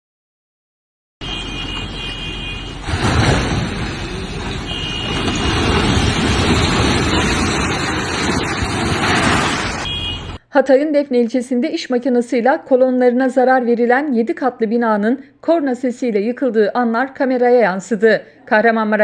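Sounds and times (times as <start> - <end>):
horn blast: 1.2 - 3.0, 4.6 - 5.4
building collapsing rumble and crash: 2.8 - 9.9.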